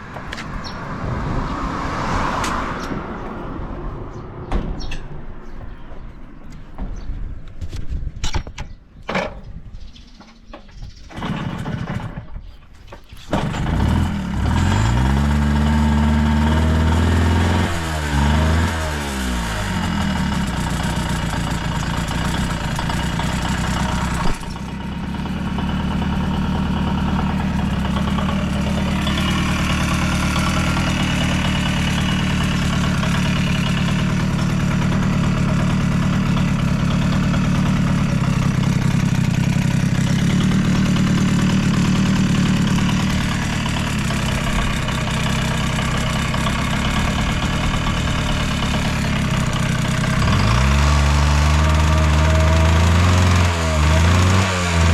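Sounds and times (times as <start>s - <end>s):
two-stroke engine revving and idling: 11.0s - 12.5s, 13.2s - 54.9s.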